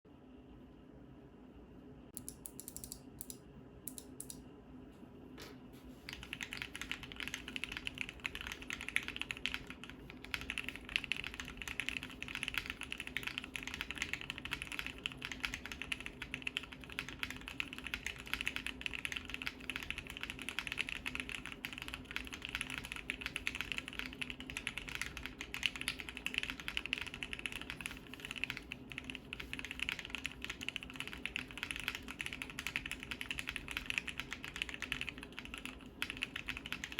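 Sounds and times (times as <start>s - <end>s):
typing on mechanical keyboard: 6.1s - 36.9s.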